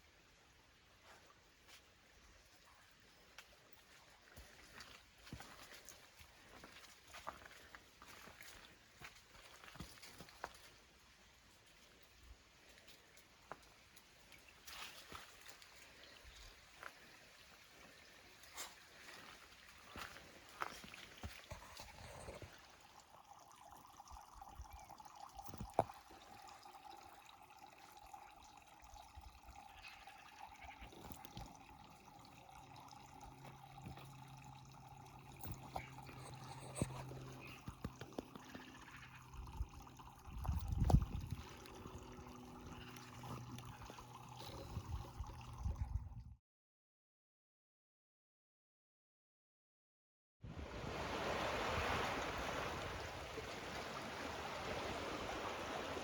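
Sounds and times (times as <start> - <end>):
water trickling: 0.0 - 46.3, 50.6 - 56.0.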